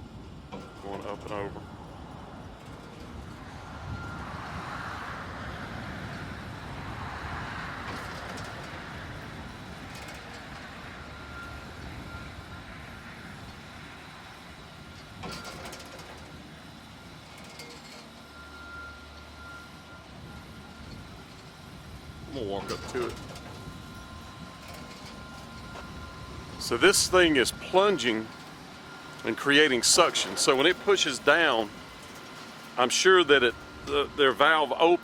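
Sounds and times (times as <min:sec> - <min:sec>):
wind rumble on microphone: 0:00.0 - 0:15.6, 0:20.1 - 0:27.7
pumpjack running: 0:13.3 - 0:16.6, 0:17.2 - 0:19.3, 0:22.3 - 0:35.0
faint high whine: 0:22.3 - 0:32.2, 0:32.8 - 0:35.0.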